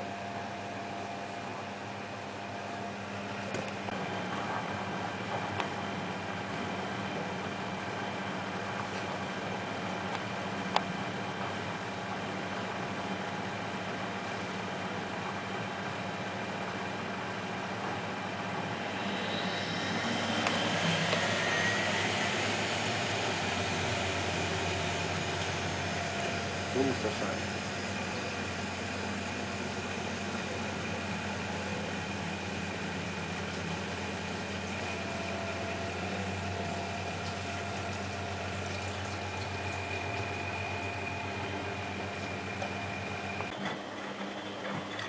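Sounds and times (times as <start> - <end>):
washing machine spinning: 0.0 - 45.0
faint high whine: 18.1 - 43.8.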